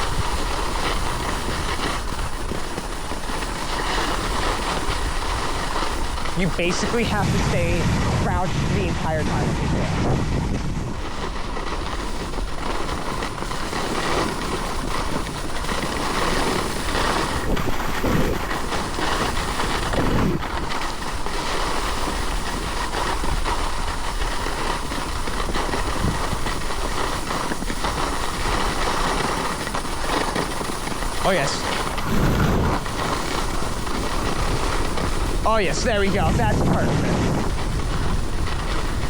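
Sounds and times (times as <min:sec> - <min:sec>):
skis rushing over packed snow: 0:00.0 - 0:39.0
wind buffeting microphone: 0:00.0 - 0:39.0.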